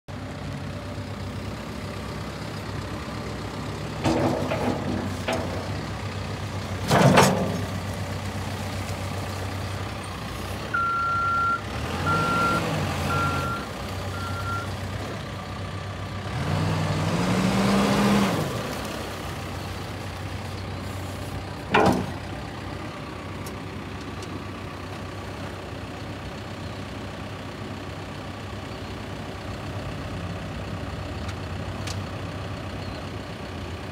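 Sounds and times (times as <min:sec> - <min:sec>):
diesel engine idling and revving: 0:00.1 - 0:33.9
sharp clunks: 0:04.0 - 0:05.8, 0:06.8 - 0:07.8, 0:21.7 - 0:22.2
reverse alarm beeps: 0:10.8 - 0:14.7.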